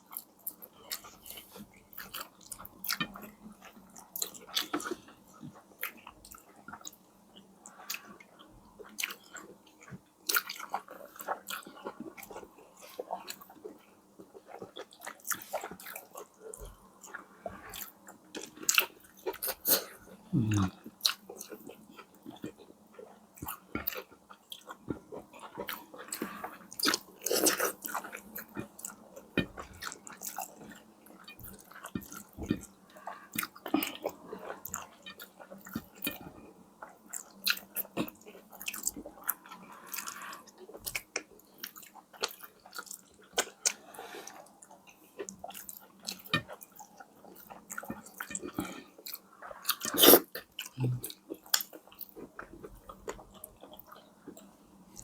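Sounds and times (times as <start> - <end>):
person chewing and smacking: 0.0 - 55.0.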